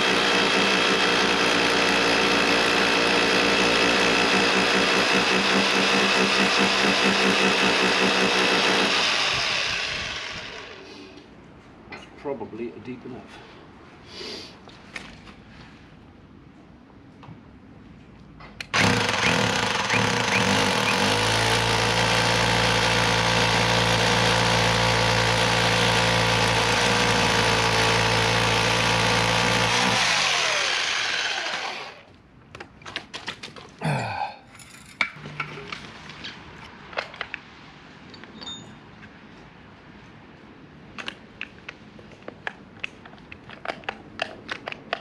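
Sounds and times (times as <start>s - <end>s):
hammer drill boring into wall: 0.0s - 10.9s, 18.7s - 32.1s
knocks and clicks of drill handling: 18.4s - 21.5s.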